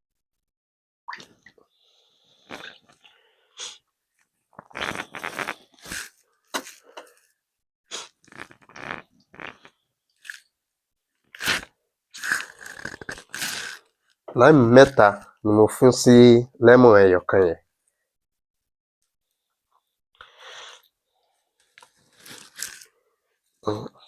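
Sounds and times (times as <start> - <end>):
limes being squeezed by hand: 4.6 - 7.2, 11.3 - 13.9, 21.8 - 22.9.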